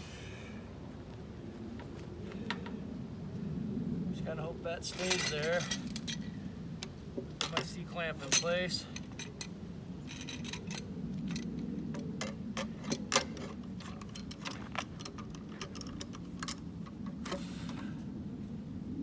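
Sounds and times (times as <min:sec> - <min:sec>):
steady low hum: 0:00.0 - 0:19.0
metal clamp clicking and clinking: 0:04.9 - 0:06.2, 0:07.4 - 0:17.4.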